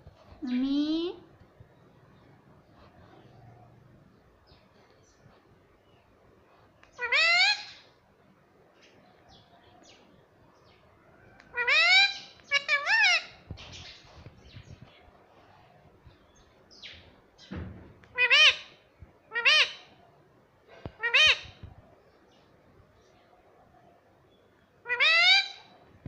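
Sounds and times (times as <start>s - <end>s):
parrot calling: 6.9s - 7.9s, 11.4s - 13.4s, 18.1s - 20.0s, 20.9s - 21.6s, 24.8s - 25.7s
low thump: 17.5s - 18.0s.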